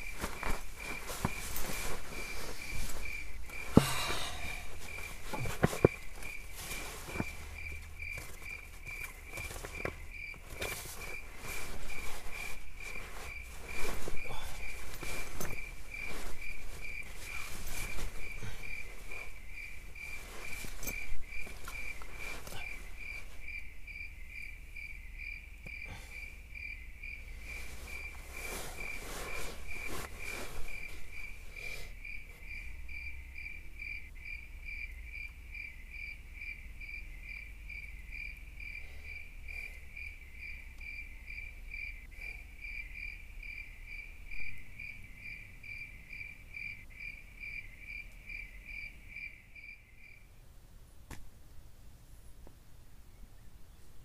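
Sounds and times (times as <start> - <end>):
rustles and knocks: 0.0 - 23.6
cricket chirping: 0.0 - 50.4.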